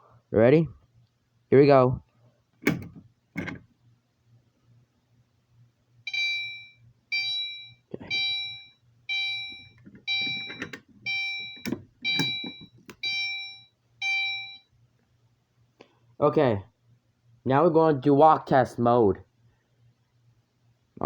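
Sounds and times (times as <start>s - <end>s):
fire alarm chime ding: 6.1s - 14.7s.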